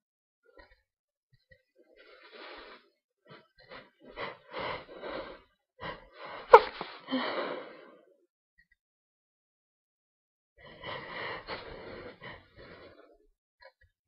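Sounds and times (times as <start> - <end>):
person sneezing: 6.5 - 7.0.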